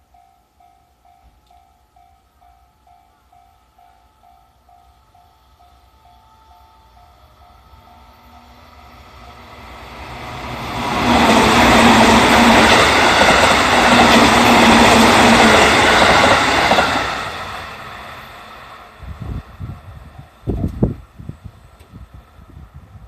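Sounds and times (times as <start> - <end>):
train wheels and running gear: 4.2 - 18.4, 19.0 - 22.2.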